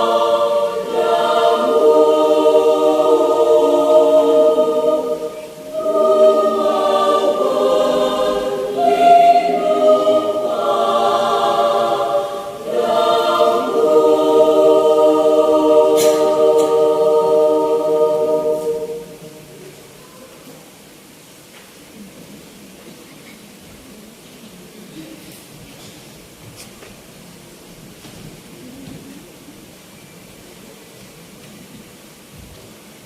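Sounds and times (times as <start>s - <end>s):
choir singing chords: 0.0s - 20.0s.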